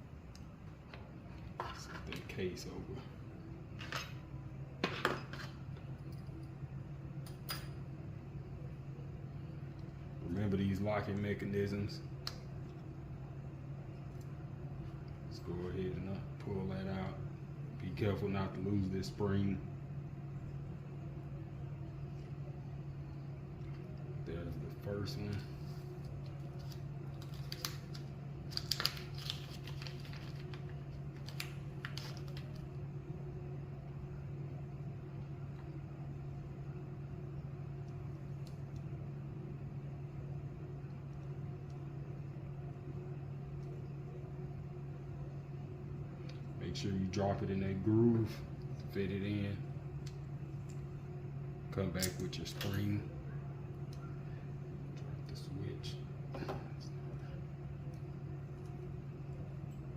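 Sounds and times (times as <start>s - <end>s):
steady low hum: 0.0s - 59.9s
small clicks and crinkling rustles: 23.1s - 32.8s, 37.8s - 39.0s, 56.4s - 59.9s.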